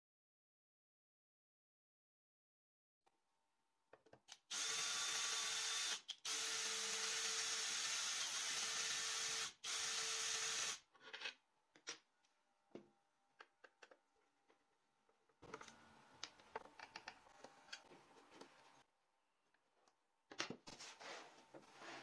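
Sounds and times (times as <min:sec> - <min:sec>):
small power tool running: 0:04.5 - 0:10.8.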